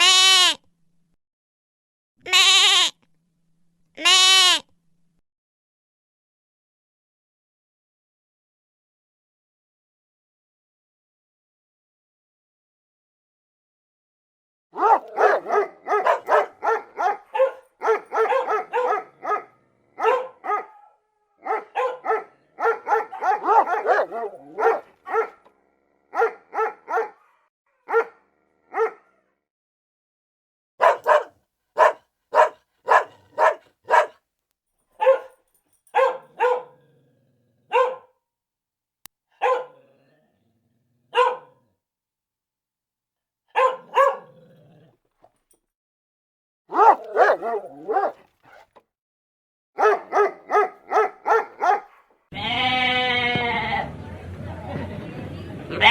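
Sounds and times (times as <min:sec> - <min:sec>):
dog barking: 0:14.8 - 0:29.3, 0:30.8 - 0:34.2, 0:35.0 - 0:37.0, 0:37.6 - 0:38.2, 0:39.3 - 0:40.0, 0:41.1 - 0:41.7, 0:43.5 - 0:44.7, 0:46.7 - 0:48.8, 0:49.8 - 0:52.2.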